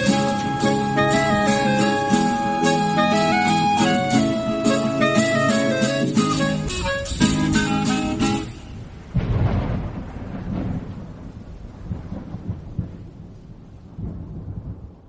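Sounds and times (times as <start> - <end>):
rain-like hiss: 0.0 - 15.0
rolling thunder: 8.3 - 15.0.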